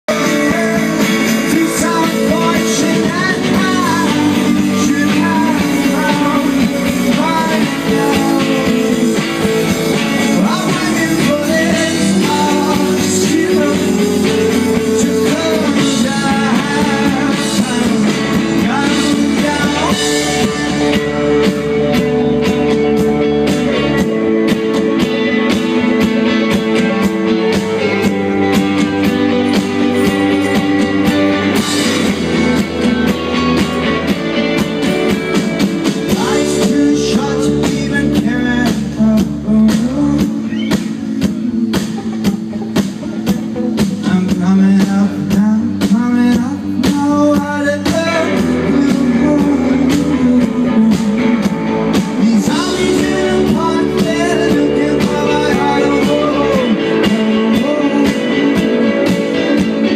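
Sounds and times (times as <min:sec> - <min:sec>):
person singing: 0:00.0 - 0:24.4, 0:35.8 - 0:59.9
rock guitars: 0:00.0 - 0:59.9
drum strokes: 0:00.1 - 0:46.2.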